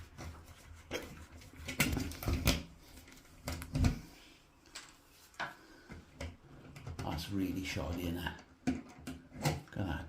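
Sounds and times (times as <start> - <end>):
knocks and clicks of wiring work: 1.6 - 4.0, 4.7 - 10.0.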